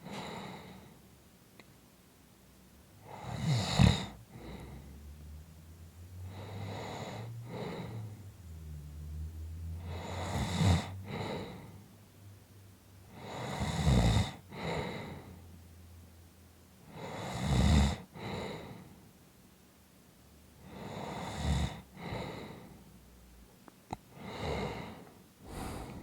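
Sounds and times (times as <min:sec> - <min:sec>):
person snoring: 0:24.2 - 0:26.0.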